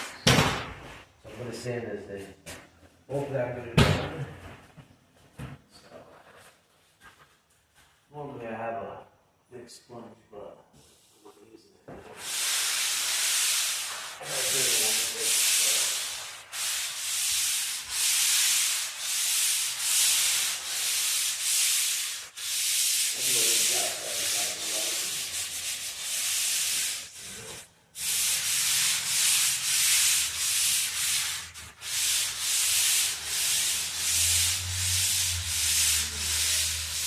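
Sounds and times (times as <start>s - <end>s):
sanding sponge scrubbing drywall: 12.1s - 37.0s.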